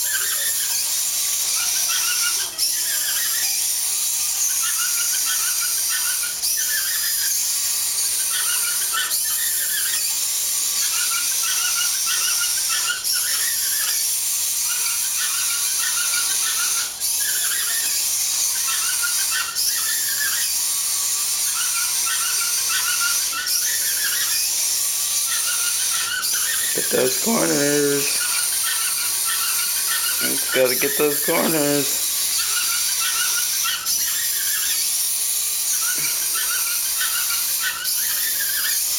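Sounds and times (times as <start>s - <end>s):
robot motors whining: 0.0s - 38.9s.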